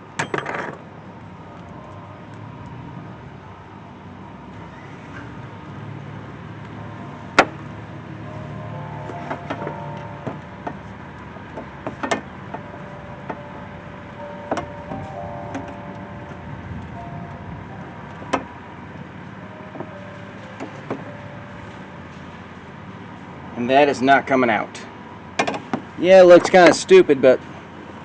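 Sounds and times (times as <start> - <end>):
clicks and knocks of parts: 11.5 - 12.6.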